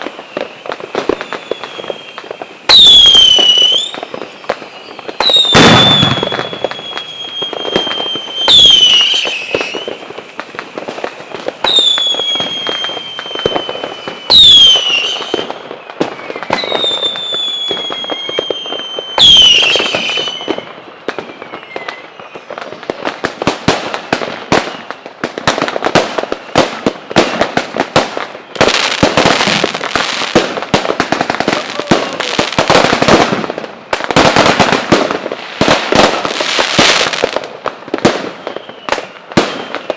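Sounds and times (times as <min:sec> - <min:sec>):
descending high whistle: 0:00.0 - 0:10.0, 0:11.2 - 0:22.5, 0:38.3 - 0:39.9
rapid firework crackling: 0:00.0 - 0:39.9
whistling firework shells bursting: 0:00.0 - 0:39.9.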